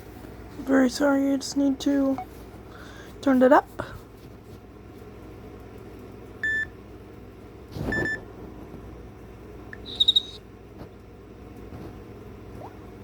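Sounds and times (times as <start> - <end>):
high chirp from phone: 9.8 - 10.4.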